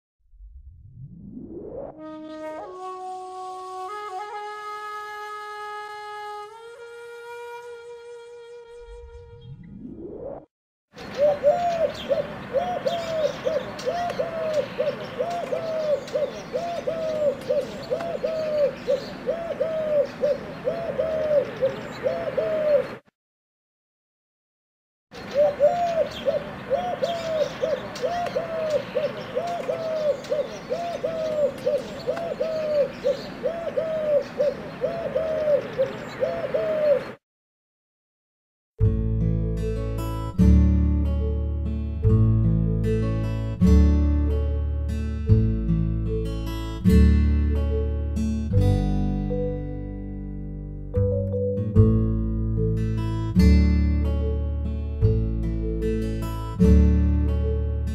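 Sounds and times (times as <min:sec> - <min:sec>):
rising sweep: 0:00.3 - 0:02.3, 0:08.8 - 0:10.5
pigeon cooing: 0:11.0 - 0:23.0, 0:25.3 - 0:37.2.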